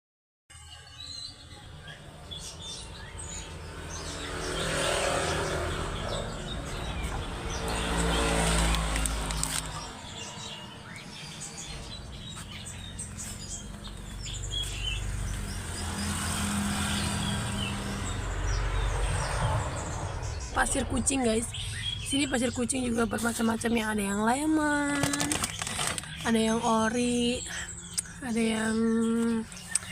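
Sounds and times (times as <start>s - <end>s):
small birds chirping: 0.7s - 29.9s
motor vehicles passing: 1.8s - 29.9s.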